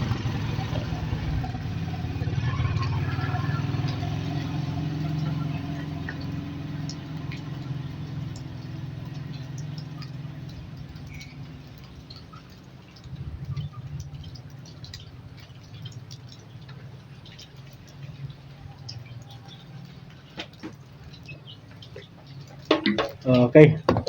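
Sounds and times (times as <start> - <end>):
low hum: 0.0 - 16.4.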